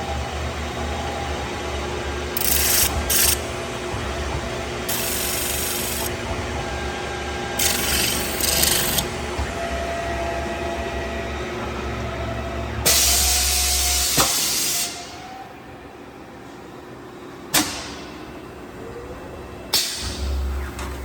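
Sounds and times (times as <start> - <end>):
lathe motor hum: 2.1 - 3.6, 4.8 - 9.4.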